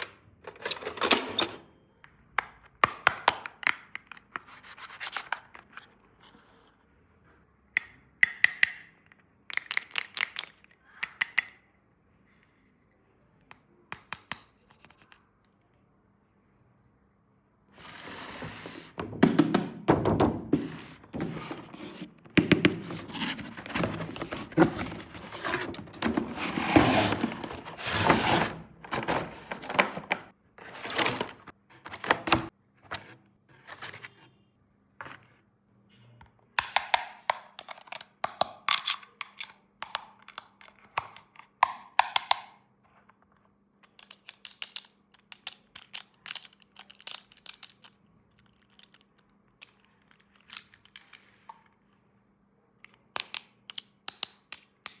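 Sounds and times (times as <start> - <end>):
handling plastic toys and packaging: 17.8 - 32.5, 42.9 - 52.0.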